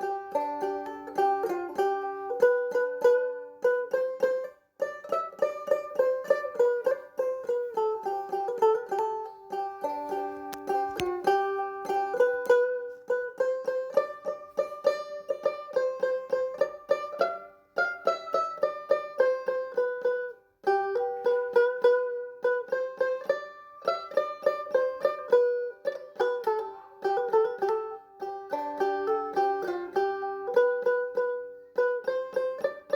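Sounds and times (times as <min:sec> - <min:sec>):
plucked string instrument melody: 0:00.0 - 0:32.9.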